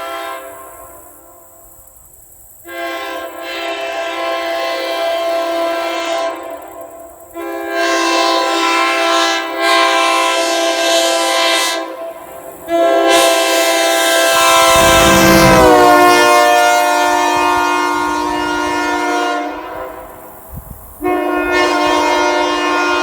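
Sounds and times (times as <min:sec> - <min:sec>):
air horn chord blasts: 0:12.7 - 0:19.9, 0:21.0 - 0:23.0.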